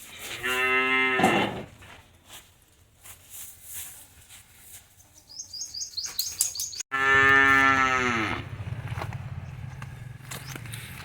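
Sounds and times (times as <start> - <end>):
cow mooing: 0.4 - 1.7, 6.9 - 8.6
small bird chirping: 5.1 - 6.9.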